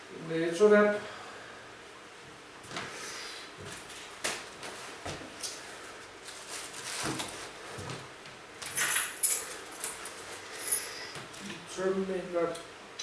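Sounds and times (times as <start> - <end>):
crinkly rustling: 5.9 - 8.1.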